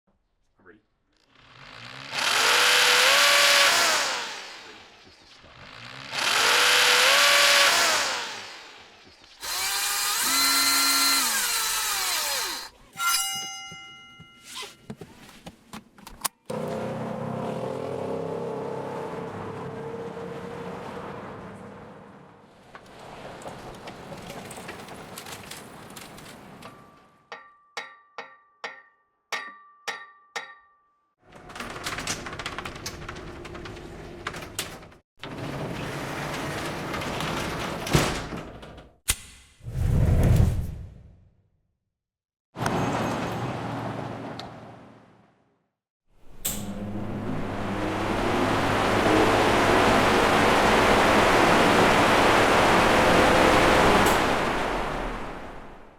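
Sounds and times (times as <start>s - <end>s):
power tool running: 1.2s - 12.8s
rough rasping saw: 1.3s - 8.5s, 9.4s - 13.7s
rasping crackling tool noise: 9.4s - 13.3s
sharp ringing knocks: 13.0s - 14.5s, 27.3s - 30.9s.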